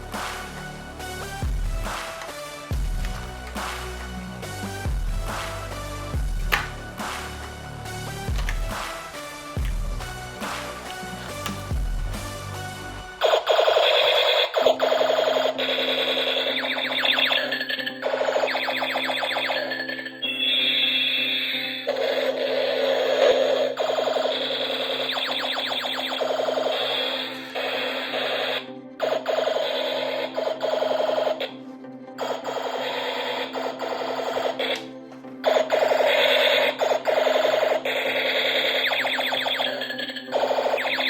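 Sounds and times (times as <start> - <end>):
synthesized toy zaps: 35.4 - 41.0.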